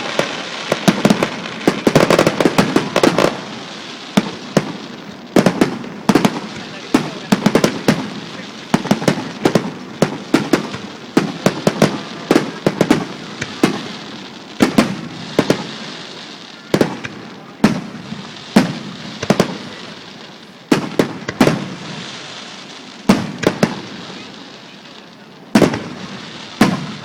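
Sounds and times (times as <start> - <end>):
fireworks bangs with rumbling echo: 0.0 - 27.0.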